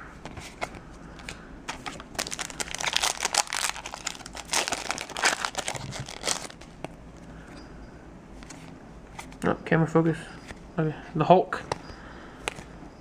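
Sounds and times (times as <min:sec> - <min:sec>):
foil wrapper crinkling and tearing: 0:01.7 - 0:06.7.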